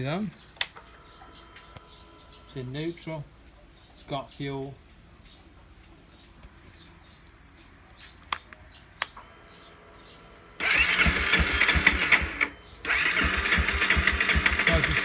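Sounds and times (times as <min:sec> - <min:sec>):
electric starter cranking engine: 0:09.2 - 0:15.0.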